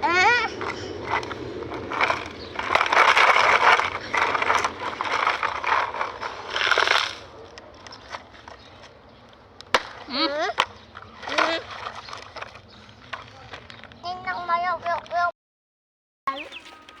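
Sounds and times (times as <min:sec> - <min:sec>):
scraping rattling noise with clicks: 0:00.5 - 0:10.0, 0:10.6 - 0:14.0.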